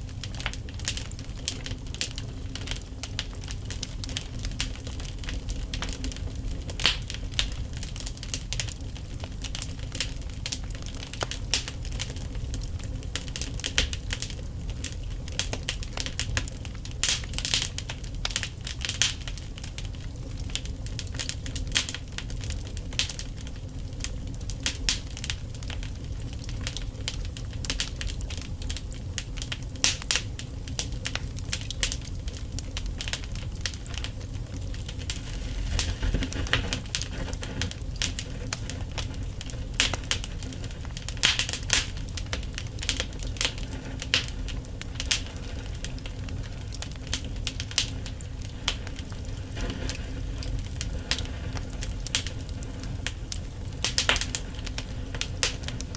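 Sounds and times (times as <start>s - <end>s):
fire crackling and popping: 0.0s - 55.9s
low rumble of flames: 0.0s - 55.9s.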